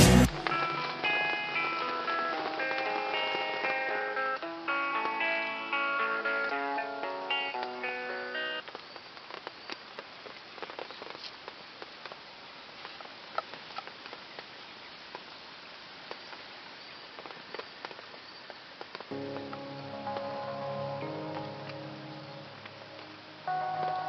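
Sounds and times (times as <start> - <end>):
guitar background music: 0.0 - 8.6, 19.1 - 24.0
soft steady hiss: 0.2 - 24.0
small irregular crackles: 0.3 - 24.0.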